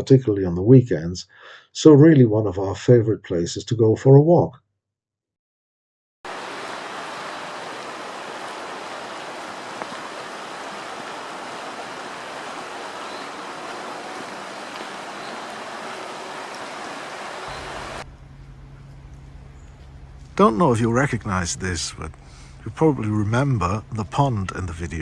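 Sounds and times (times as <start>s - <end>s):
fountain splashing into pond: 6.3s - 18.1s.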